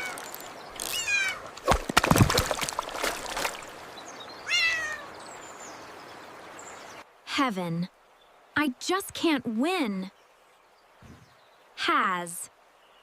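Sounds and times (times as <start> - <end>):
kittens meowing: 4.5 - 5.1.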